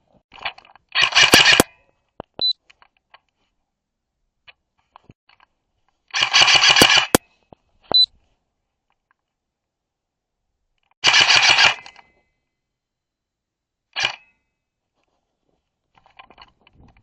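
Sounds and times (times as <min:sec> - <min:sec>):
airsoft rifle bursts: 0:01.0 - 0:01.8, 0:06.2 - 0:07.3, 0:11.0 - 0:12.1.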